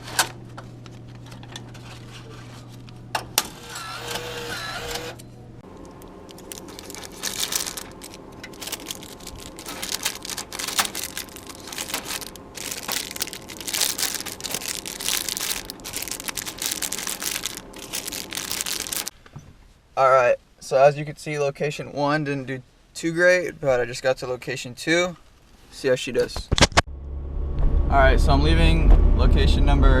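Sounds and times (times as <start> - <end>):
packaging crinkling and rustling: 0.0 - 3.2, 5.6 - 19.1
clicks and clatter: 5.7 - 19.1.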